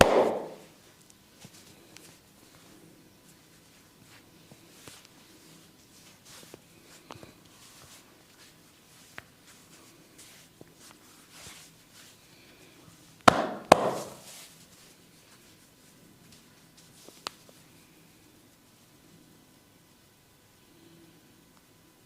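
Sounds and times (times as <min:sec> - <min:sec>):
loud hand slaps: 0:00.0 - 0:00.6, 0:13.3 - 0:14.3
hands rubbing skin: 0:00.0 - 0:12.6, 0:13.7 - 0:17.6.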